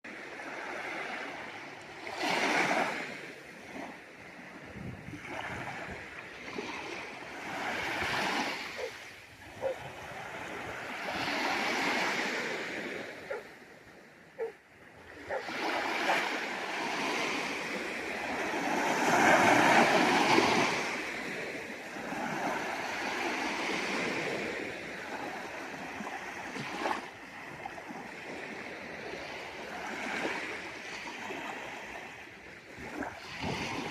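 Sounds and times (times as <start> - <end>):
sea waves washing ashore: 0.1 - 33.9.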